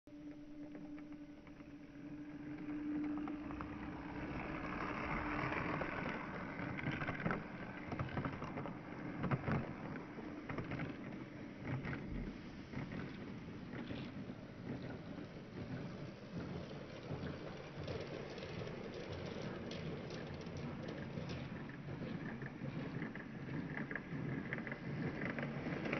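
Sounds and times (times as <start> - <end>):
faint motor hum: 0.1 - 25.9
toy train rattling on plastic track: 3.0 - 12.1, 15.3 - 25.9.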